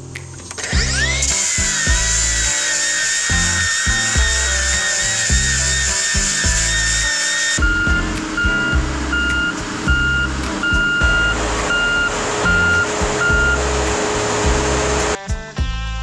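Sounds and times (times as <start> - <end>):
backup alarm beeping: 7.6 - 13.9.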